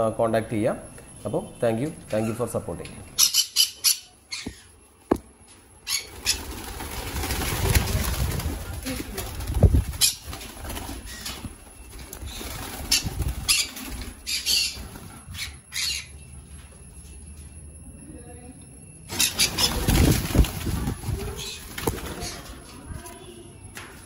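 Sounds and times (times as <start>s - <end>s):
birds flapping wings: 6.0s - 15.3s, 19.1s - 23.2s.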